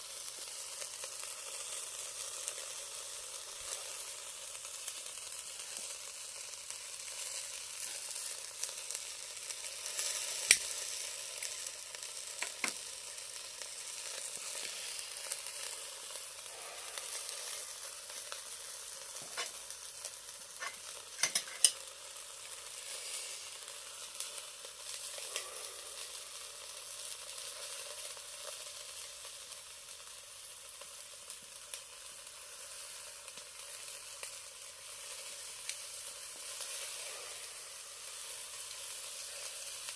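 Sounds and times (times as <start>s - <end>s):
chicken sizzling on a grill: 0.0s - 39.9s
sharp pops of grilling meat: 9.8s - 12.9s, 19.1s - 19.7s, 20.5s - 21.9s.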